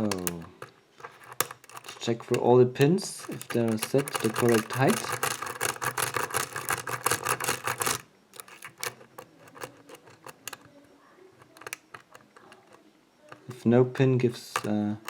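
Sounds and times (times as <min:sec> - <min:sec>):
lock pick clicking in lock: 0:03.3 - 0:10.6.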